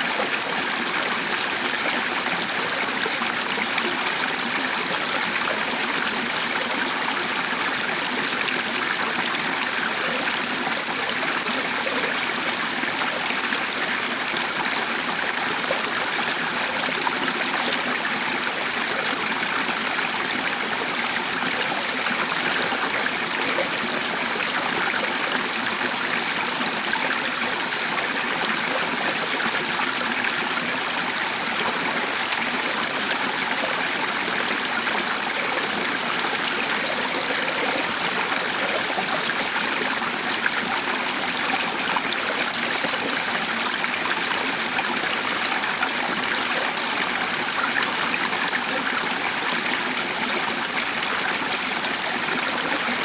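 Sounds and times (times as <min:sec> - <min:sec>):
stream flowing: 0:00.0 - 0:53.0.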